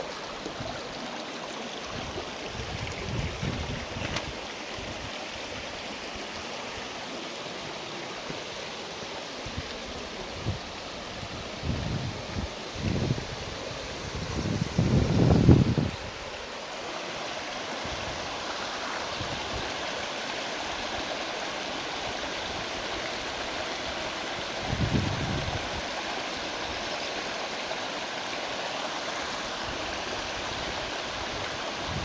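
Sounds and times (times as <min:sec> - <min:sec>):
low wind rumble on microphone: 0:01.9 - 0:05.1, 0:09.4 - 0:16.2, 0:24.6 - 0:25.8.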